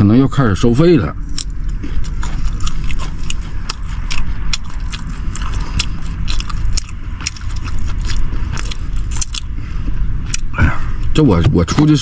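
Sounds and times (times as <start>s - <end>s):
low steady rumble: 0.0s - 12.0s
person gnawing meat off bones: 1.2s - 10.6s.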